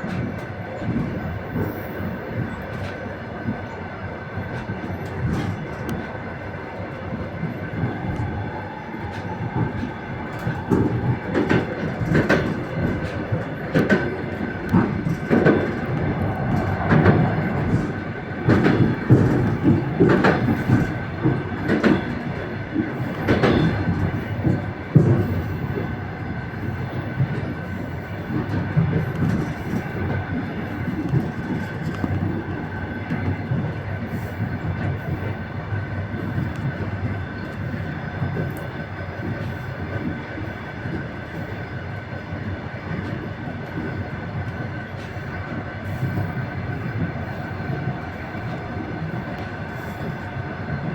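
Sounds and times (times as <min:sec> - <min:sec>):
train rumble with thin whine: 0:00.0 - 0:50.9
train wheels clattering over joints: 0:00.0 - 0:50.9.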